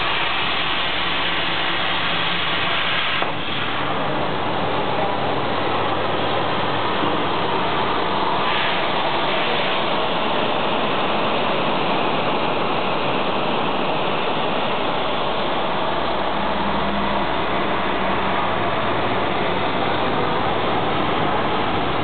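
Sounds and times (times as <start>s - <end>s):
plasma cutting torch hissing: 0.0s - 4.4s, 6.6s - 18.9s.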